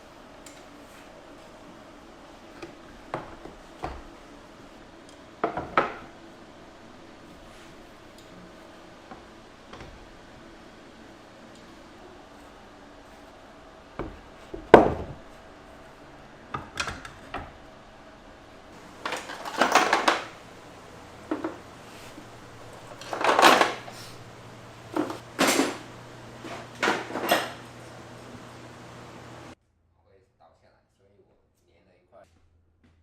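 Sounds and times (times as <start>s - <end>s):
hard objects knocking and clattering: 14.0s - 15.3s, 18.7s - 27.8s.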